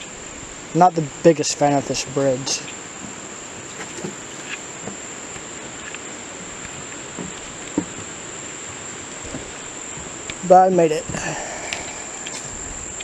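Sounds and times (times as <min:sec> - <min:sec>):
crickets chirping: 0:00.0 - 0:13.0
footsteps on a bridge: 0:02.6 - 0:12.8.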